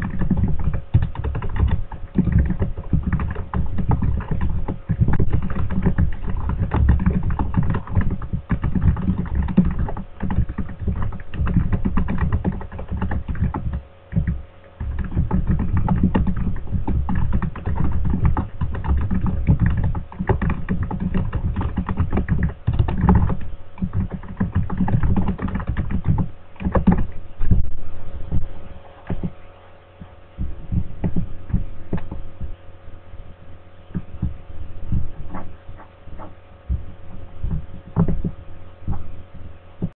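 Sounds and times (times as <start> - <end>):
fast typing on keyboard: 0.0 - 27.6, 29.1 - 29.3, 30.7 - 32.2, 37.4 - 38.3.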